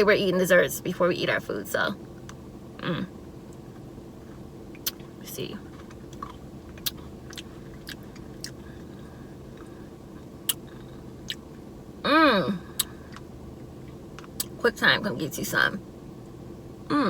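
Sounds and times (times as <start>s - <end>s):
woman humming mmm: 2.8s - 3.1s, 12.0s - 12.9s.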